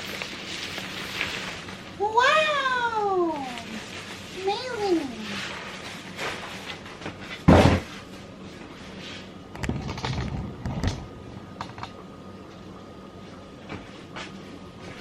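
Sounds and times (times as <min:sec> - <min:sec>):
packaging rustling: 0:00.0 - 0:02.0, 0:03.2 - 0:07.4
loud thump: 0:07.5 - 0:07.9.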